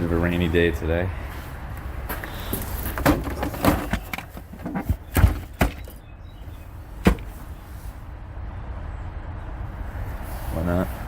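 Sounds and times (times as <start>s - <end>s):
junk thudding in dumpster: 2.9s - 6.0s.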